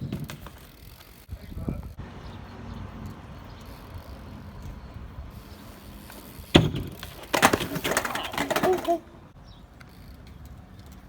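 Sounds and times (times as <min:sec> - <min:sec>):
hard bike landing impact: 0:00.0 - 0:00.8, 0:06.2 - 0:09.0
bike rolling rumble: 0:00.0 - 0:11.0.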